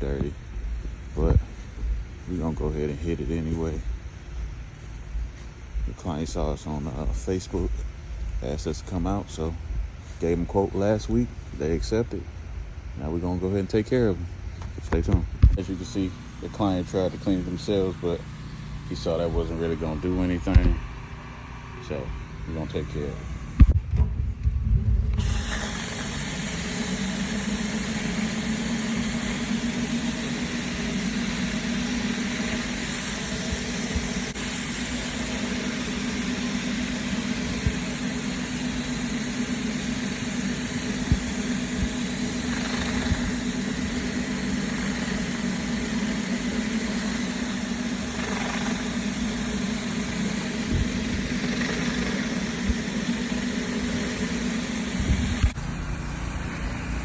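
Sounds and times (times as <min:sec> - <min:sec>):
pressure washer engine drone: 0:00.0 - 0:23.8, 0:25.0 - 0:57.0
high-pressure water spray hissing: 0:25.2 - 0:57.0.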